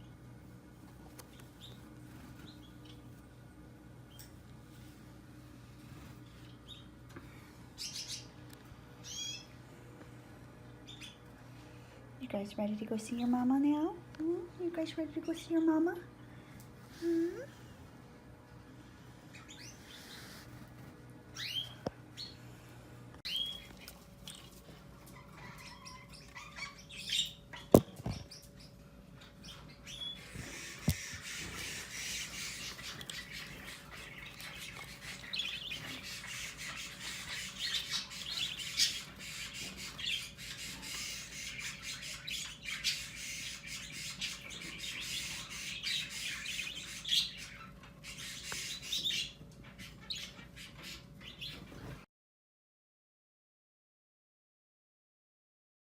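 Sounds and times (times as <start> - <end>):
budgerigars chirping and squawking: 6.2 - 8.4, 9.0 - 9.6, 10.8 - 11.3, 19.2 - 20.6, 21.3 - 22.4, 23.3 - 24.0, 25.0 - 52.0.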